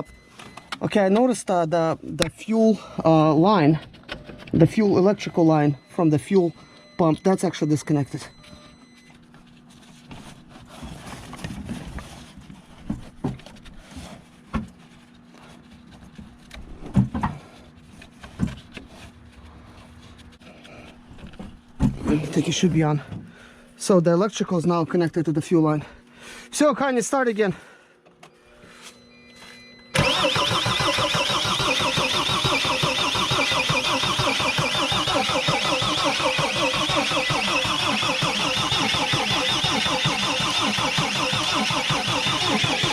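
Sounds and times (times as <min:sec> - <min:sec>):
starter cranking diesel engine: 0:30.0 - 0:42.9.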